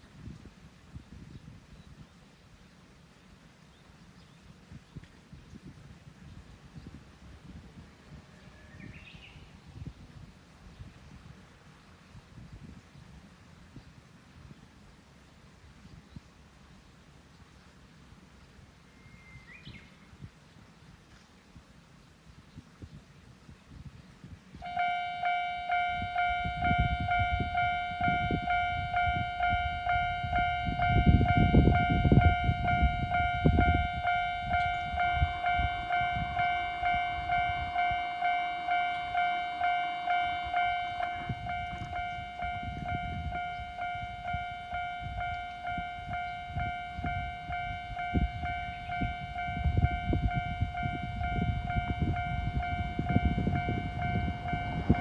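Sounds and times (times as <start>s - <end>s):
train rumble with wheel clatter: 24.1s - 55.0s
level-crossing alarm clanging: 24.6s - 55.0s.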